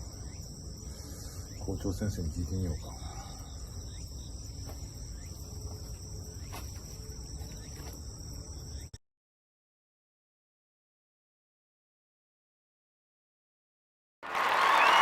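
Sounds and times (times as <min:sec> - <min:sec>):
insects chirring: 0:00.0 - 0:09.0.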